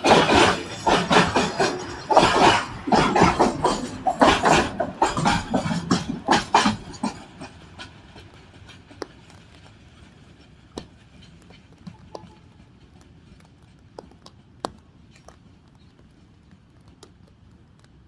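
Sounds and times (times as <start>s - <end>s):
train wheels clattering: 0.0s - 17.0s
faint clicks: 10.8s - 18.0s.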